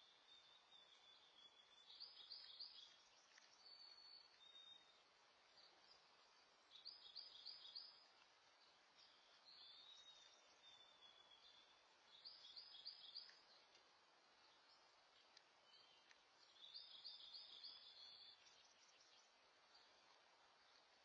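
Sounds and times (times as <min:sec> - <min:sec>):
faint bird chirps: 0:00.0 - 0:21.0
low background hiss: 0:00.0 - 0:21.0.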